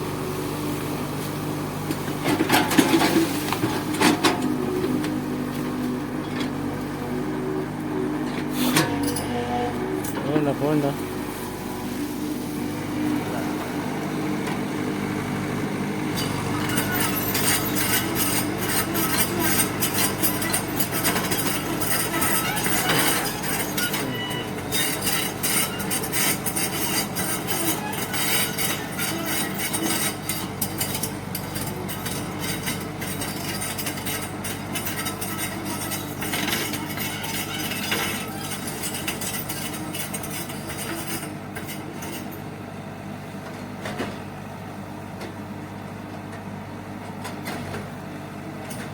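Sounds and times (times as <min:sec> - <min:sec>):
bulldozer diesel engine running: 0:00.0 - 0:48.9.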